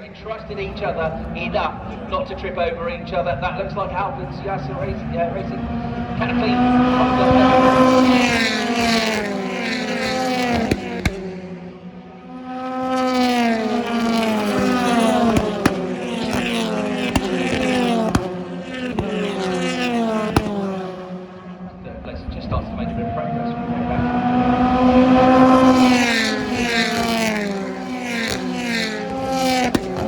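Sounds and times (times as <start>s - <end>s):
racing cars passing at speed: 0.0s - 30.0s
sharp cracks: 7.6s - 12.2s, 13.2s - 21.4s, 25.8s - 30.0s.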